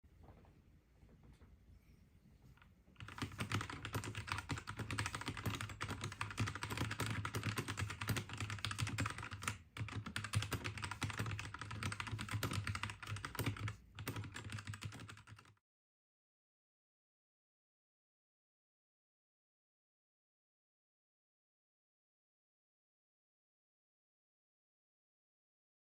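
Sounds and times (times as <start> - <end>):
fast typing on mechanical keyboard: 3.0 - 15.6.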